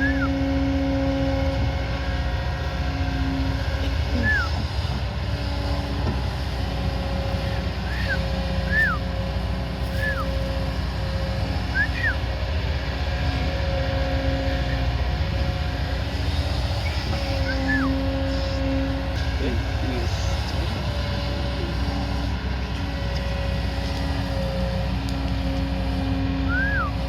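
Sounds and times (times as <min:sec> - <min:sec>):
diesel engine running: 0:00.0 - 0:27.0
steady whine: 0:00.0 - 0:27.0.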